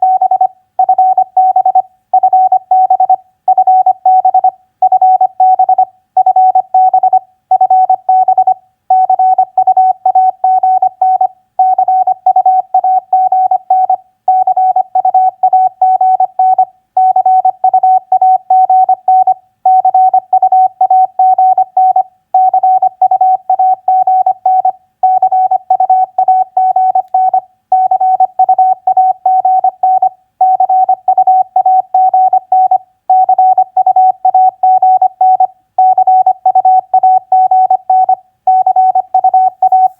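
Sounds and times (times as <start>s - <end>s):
morse code tone: 9.0s - 39.9s.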